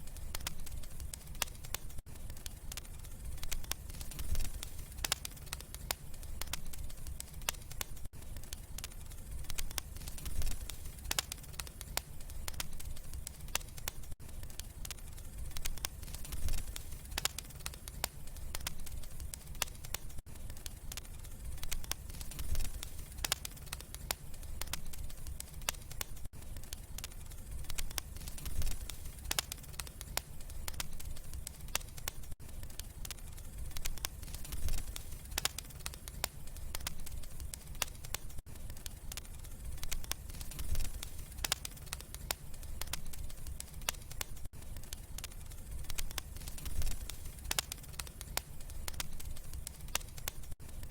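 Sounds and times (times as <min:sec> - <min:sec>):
wood fire crackling and popping: 0:00.0 - 0:50.9.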